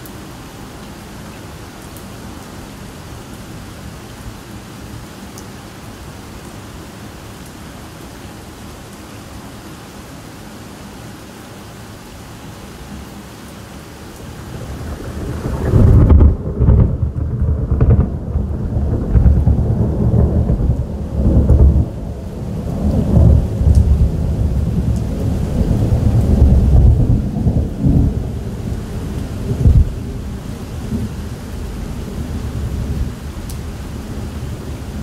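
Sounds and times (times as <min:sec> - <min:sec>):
steady rain: 0:00.0 - 0:35.0
rolling thunder rumble: 0:14.3 - 0:35.0
sharp thunder crack: 0:14.7 - 0:21.9, 0:29.5 - 0:30.0.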